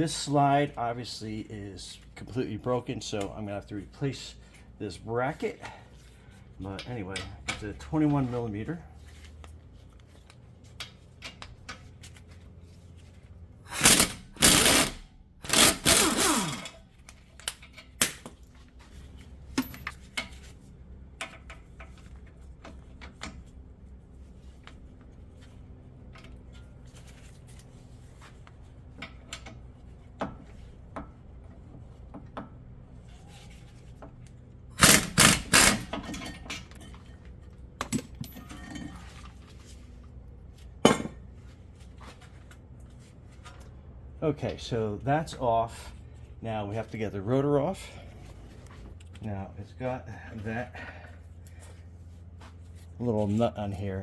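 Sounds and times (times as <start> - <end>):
impact wrench hammering: 13.7 - 16.8, 34.7 - 36.3
tool clinks: 37.8 - 39.1.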